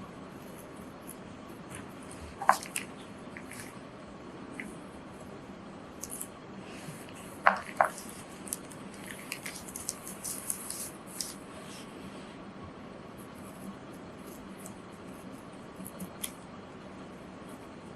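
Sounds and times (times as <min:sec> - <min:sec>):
scissors snipping paper: 0:00.3 - 0:03.8, 0:06.0 - 0:06.3, 0:07.4 - 0:11.4, 0:13.3 - 0:16.5.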